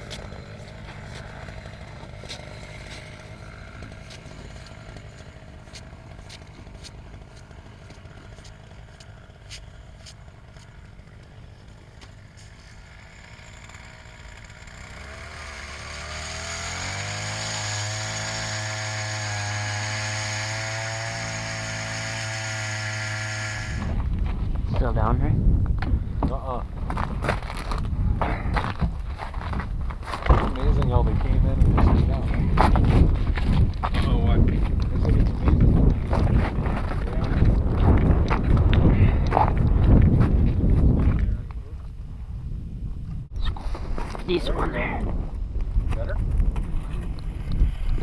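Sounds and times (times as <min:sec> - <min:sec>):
small gasoline engine running: 0:00.0 - 0:24.2.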